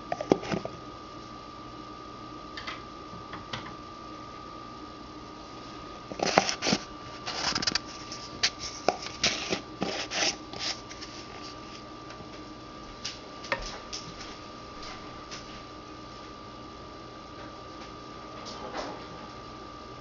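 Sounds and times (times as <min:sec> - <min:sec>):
rustling and clicking handling: 0:06.1 - 0:12.4.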